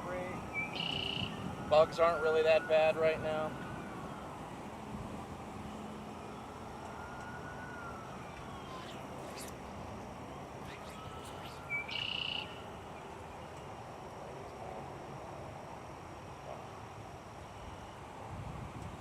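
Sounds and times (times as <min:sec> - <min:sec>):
steady outdoor hiss: 0:00.0 - 0:19.0
bird calling: 0:00.5 - 0:01.4, 0:07.6 - 0:09.6, 0:10.3 - 0:13.5.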